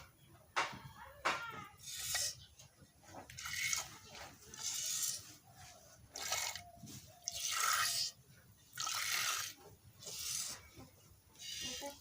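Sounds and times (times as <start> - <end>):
milk squirting into a pail: 3.3 - 5.2, 7.2 - 10.7.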